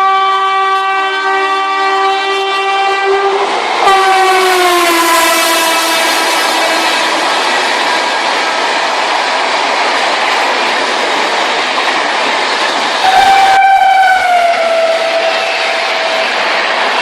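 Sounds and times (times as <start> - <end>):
train horn blasting: 0.0 - 7.3, 13.0 - 16.4
train rumbling: 0.0 - 17.0.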